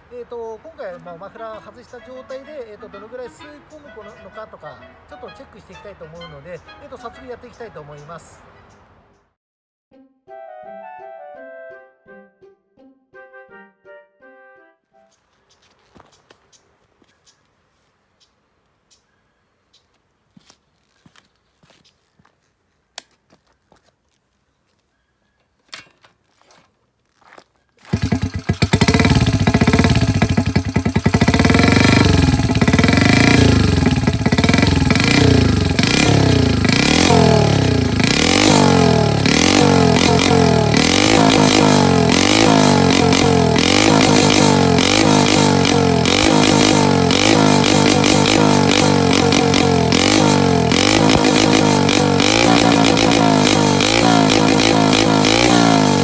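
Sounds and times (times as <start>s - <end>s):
motorcycle engine revving: 27.9s - 56.0s.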